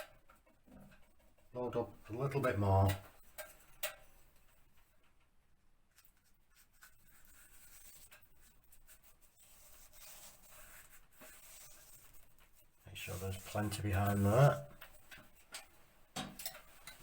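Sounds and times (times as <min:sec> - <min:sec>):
paintbrush brushing on wallpaper: 0:06.0 - 0:15.8.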